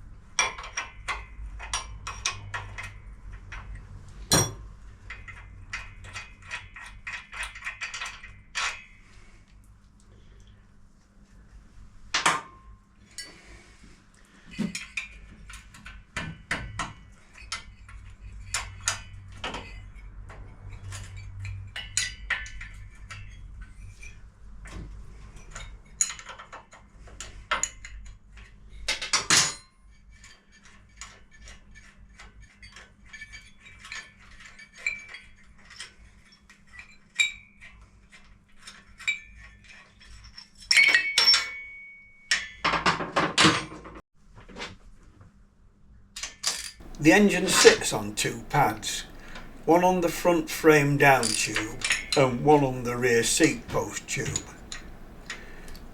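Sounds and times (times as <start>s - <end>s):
spanners clinking on metal: 40.0s - 41.6s, 46.5s - 55.9s
faint low hum: 46.8s - 55.9s.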